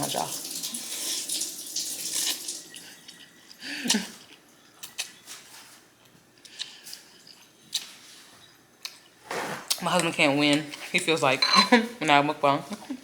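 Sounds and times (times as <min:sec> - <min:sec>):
kitchen tap running: 0:00.0 - 0:03.4.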